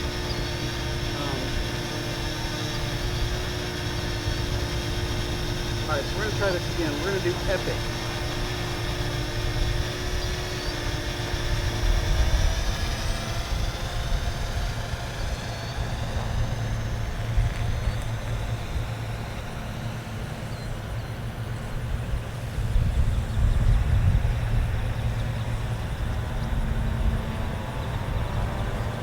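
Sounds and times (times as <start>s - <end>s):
drone propellers whining: 0.0s - 29.0s
wind rumble on microphone: 20.6s - 29.0s.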